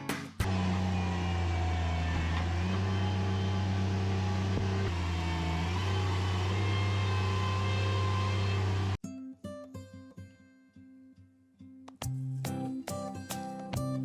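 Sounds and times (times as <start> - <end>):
heavy machinery engine humming: 0.5 - 9.0.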